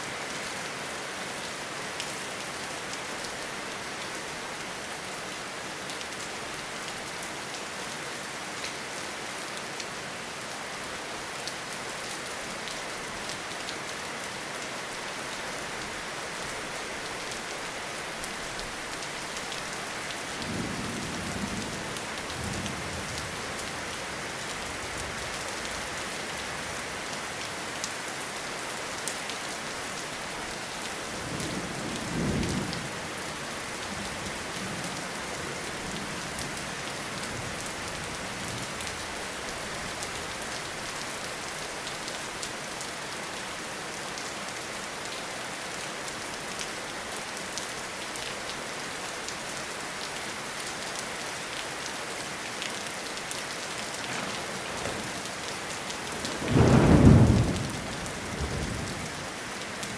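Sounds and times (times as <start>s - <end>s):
steady rain in a forest: 0.0s - 59.9s
thunder clap: 54.0s - 58.8s
low thunder rumble: 54.0s - 59.2s.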